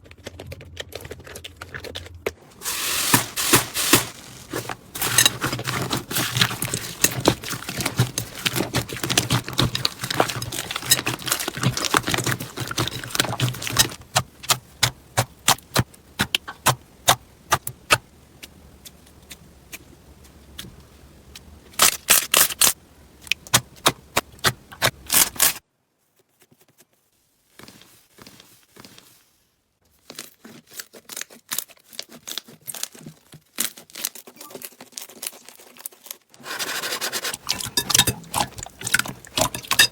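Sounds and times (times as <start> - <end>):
slime crackling and popping: 0.1 - 19.8.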